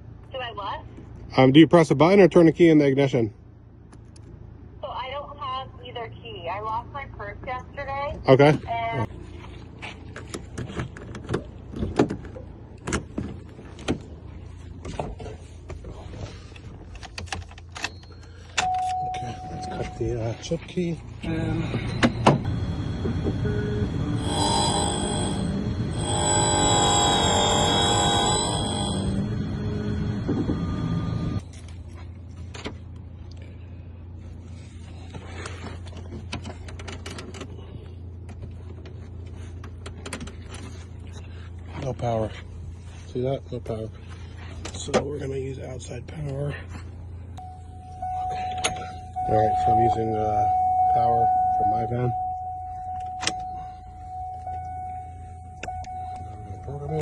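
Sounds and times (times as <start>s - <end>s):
steady low hum: 3.3s - 57.0s
key-cutting machine running: 22.4s - 31.4s.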